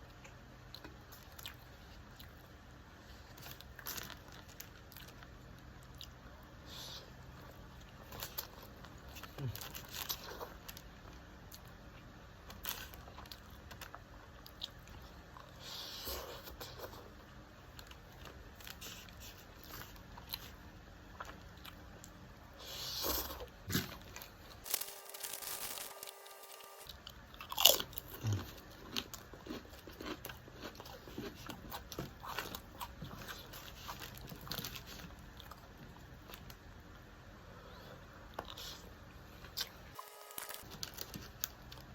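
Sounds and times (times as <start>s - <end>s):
person chewing food: 3.1s - 26.0s, 26.7s - 36.6s.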